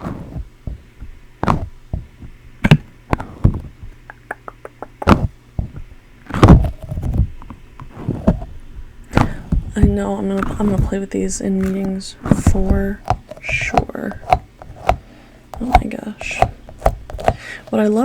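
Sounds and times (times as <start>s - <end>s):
soft knocks of balls tapped together: 9.1s - 17.8s.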